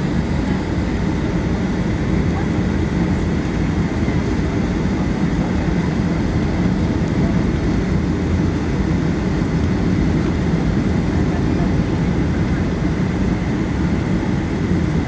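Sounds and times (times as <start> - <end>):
jet engine drone in cabin: 0.0 - 15.0.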